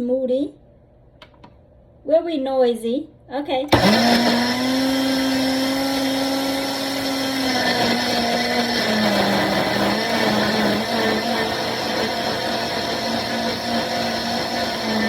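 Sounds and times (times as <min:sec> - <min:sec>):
blender motor whining: 0:03.7 - 0:15.0.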